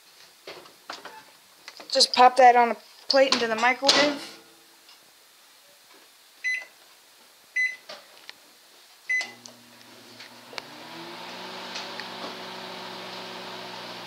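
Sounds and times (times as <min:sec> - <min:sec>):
microwave keypad beeping: 0:06.4 - 0:06.7, 0:07.6 - 0:07.8, 0:09.1 - 0:09.4
microwave oven humming: 0:09.1 - 0:14.0.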